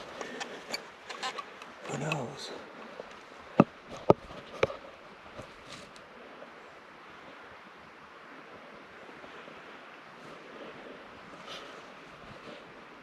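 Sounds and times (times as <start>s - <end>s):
faint ticks: 0.0s - 4.8s
wind-like hiss of outdoor air: 0.0s - 13.0s.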